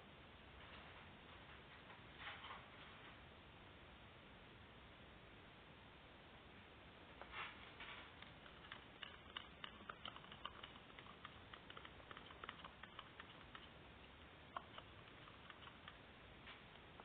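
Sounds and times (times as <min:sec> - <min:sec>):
faint light clicks and taps: 0:07.2 - 0:17.0.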